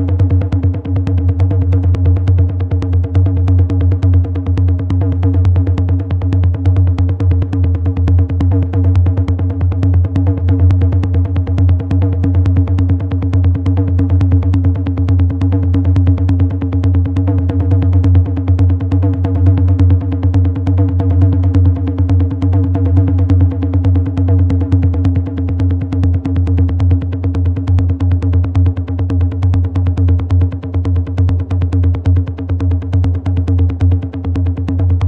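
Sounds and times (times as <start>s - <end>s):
techno on drum machine: 0.0s - 35.0s.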